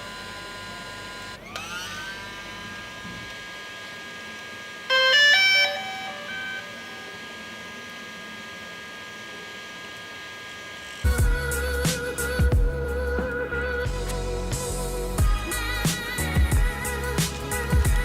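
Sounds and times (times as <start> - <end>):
sustained synth tones: 11.1 - 15.8.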